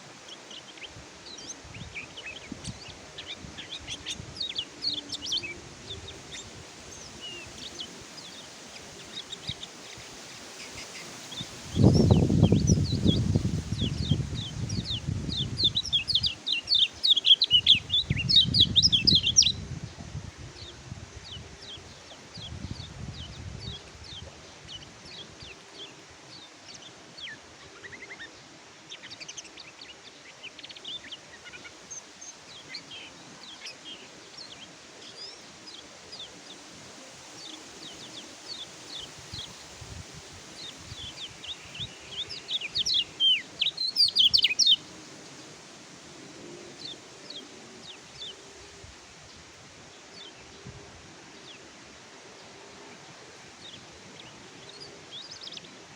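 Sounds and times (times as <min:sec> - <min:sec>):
bird chirps and trills: 0:41.0 - 0:44.8.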